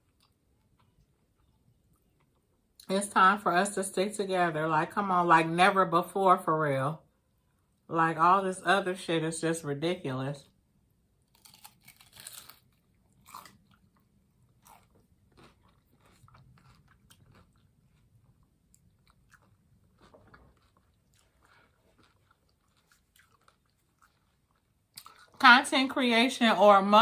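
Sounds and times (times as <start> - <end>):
person biting and chewing food: 11.2 - 25.4.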